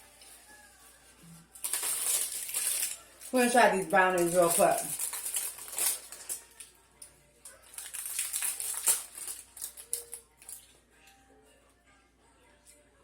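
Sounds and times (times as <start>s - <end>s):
plastic packaging crinkling: 1.5s - 6.7s, 7.4s - 10.7s.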